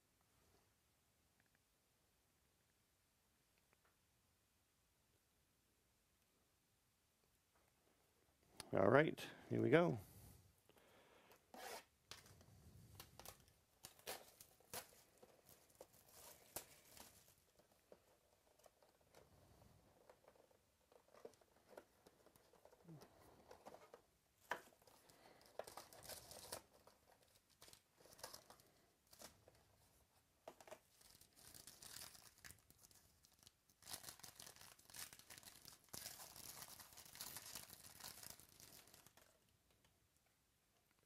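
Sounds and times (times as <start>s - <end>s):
plastic wrapping tearing and crinkling: 12.9s - 17.5s, 24.4s - 29.6s, 30.7s - 39.4s.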